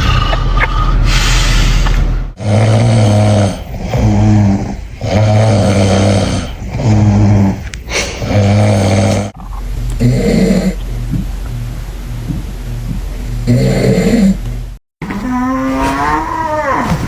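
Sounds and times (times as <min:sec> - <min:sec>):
loud snoring: 0:02.4 - 0:10.8, 0:13.4 - 0:14.4.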